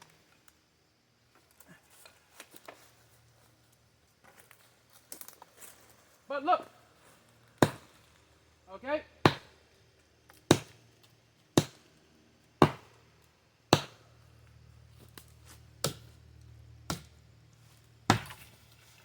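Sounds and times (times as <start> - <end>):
hatchet chopping tree trunk: 7.5 - 8.1, 9.2 - 9.6, 10.4 - 10.8, 11.6 - 11.9, 12.6 - 13.1, 13.7 - 14.1, 15.1 - 16.2, 16.8 - 17.2, 18.1 - 18.6.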